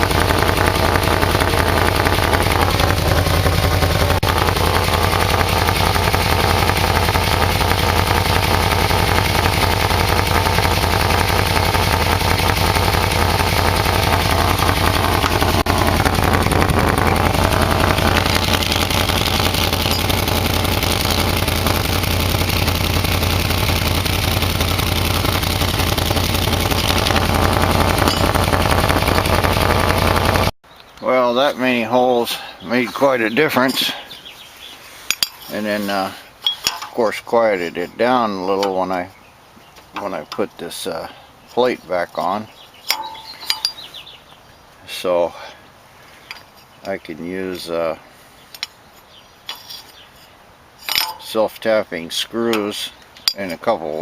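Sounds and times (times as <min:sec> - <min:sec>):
motorcycle engine idling: 0:00.0 - 0:30.5, 0:42.5 - 0:44.2.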